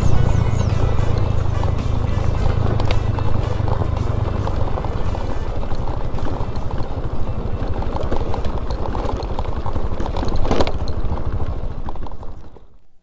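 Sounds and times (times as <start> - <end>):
rushing noise: 0.0 - 7.4
engine running steadily: 0.0 - 13.0.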